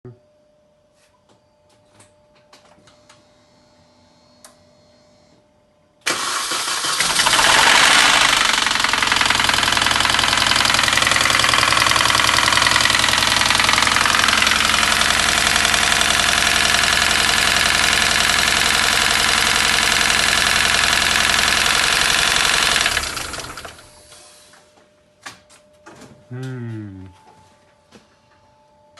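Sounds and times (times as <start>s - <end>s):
car engine starting and idling: 6.0s - 24.1s
engine knocking: 6.2s - 23.9s.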